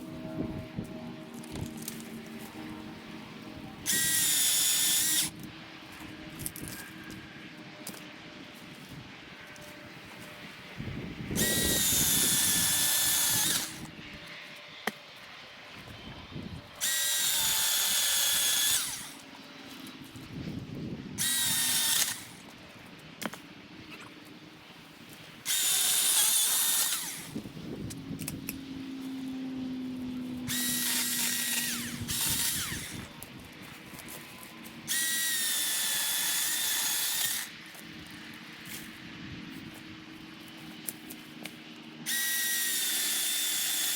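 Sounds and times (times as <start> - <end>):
battery chainsaw cutting wood: 3.8 - 5.4, 11.3 - 13.9, 16.8 - 19.2, 21.2 - 22.4, 25.4 - 27.5, 30.5 - 33.2, 34.9 - 37.6, 42.1 - 43.9.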